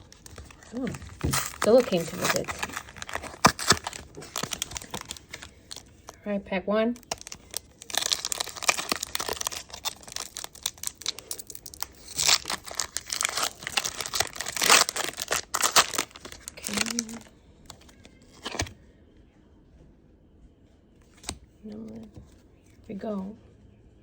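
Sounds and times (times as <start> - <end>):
foil wrapper crinkling and tearing: 0.0 - 6.2, 7.0 - 18.7.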